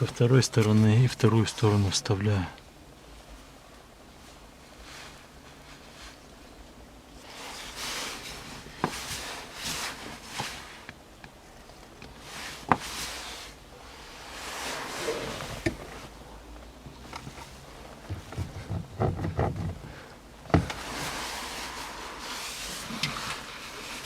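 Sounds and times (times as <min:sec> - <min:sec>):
parts rustling and scraping: 0:04.2 - 0:16.3, 0:16.9 - 0:24.0.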